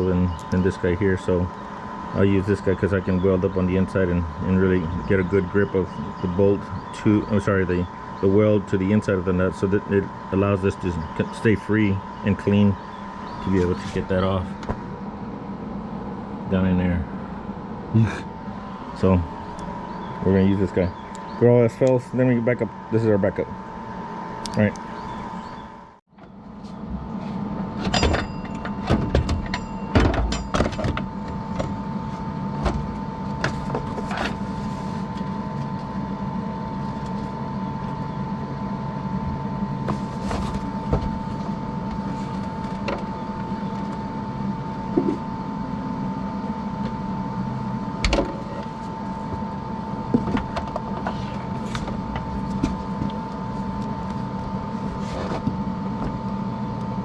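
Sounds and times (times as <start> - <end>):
high whine: 0.0 - 57.0
low hum: 0.0 - 57.0.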